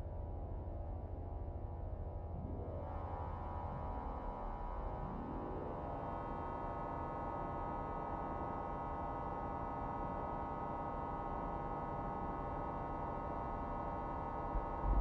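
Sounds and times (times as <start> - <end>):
flickering low rumble: 14.8 - 15.0.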